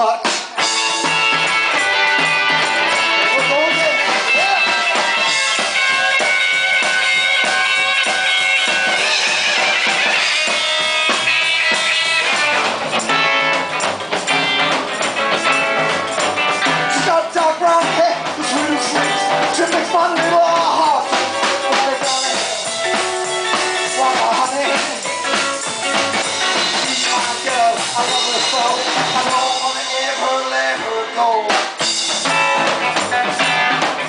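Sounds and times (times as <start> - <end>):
person singing: 0.0 - 0.6, 2.8 - 5.6, 16.7 - 31.8
drum kit beat: 0.0 - 34.0
guitar: 0.0 - 34.0.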